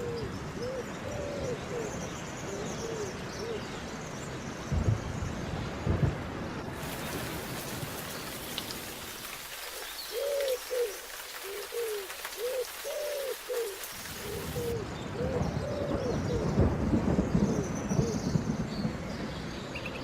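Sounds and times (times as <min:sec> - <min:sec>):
steady rain: 0:04.0 - 0:19.8.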